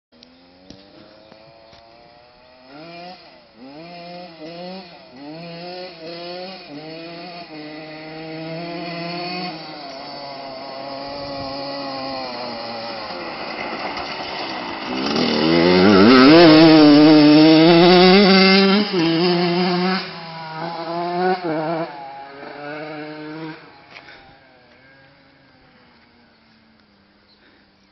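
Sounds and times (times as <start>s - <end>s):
two-stroke motorcycle engine revving: 0.2s - 26.0s.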